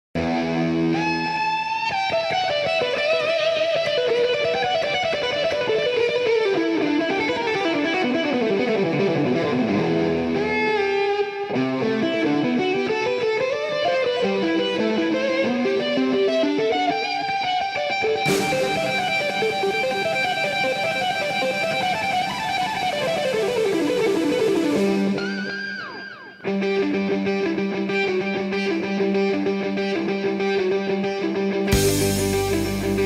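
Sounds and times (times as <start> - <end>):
electric guitar fast runs: 18.3 - 26.7, 31.7 - 33.0.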